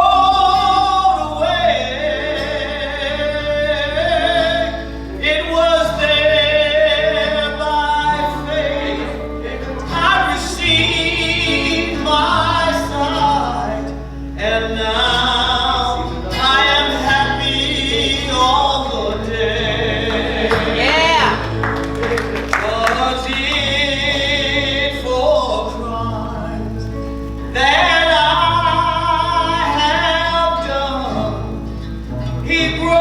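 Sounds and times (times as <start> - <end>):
person singing gospel hymn: 0.0 - 33.0.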